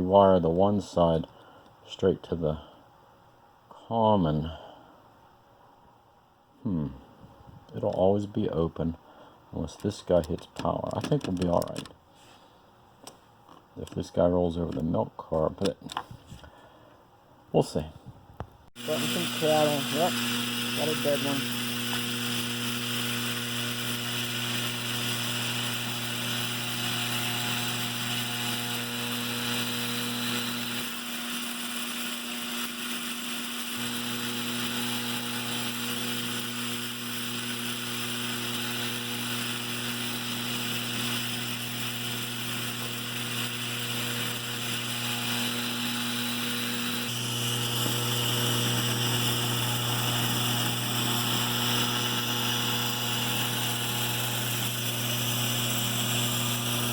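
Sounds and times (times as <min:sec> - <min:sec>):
vibrator mechanism buzzing: 0:18.8 - 0:56.9.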